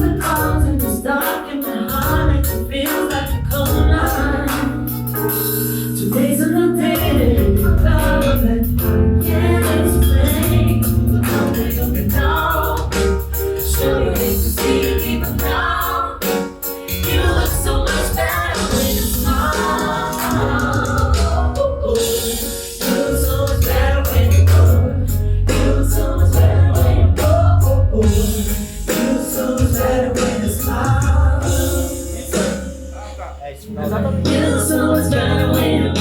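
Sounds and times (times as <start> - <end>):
music with singing voices: 0.0 - 36.0.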